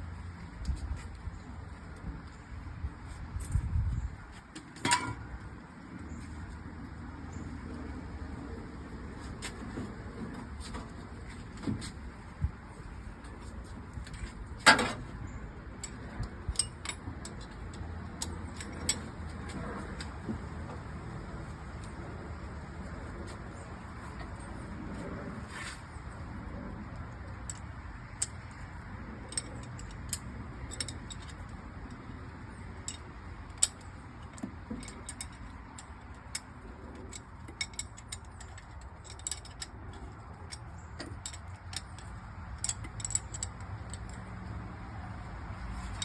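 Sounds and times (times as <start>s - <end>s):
metal tools clicking and clinking: 4.8s - 5.4s, 13.9s - 20.1s, 27.3s - 28.6s, 29.2s - 44.6s, 45.7s - 46.0s.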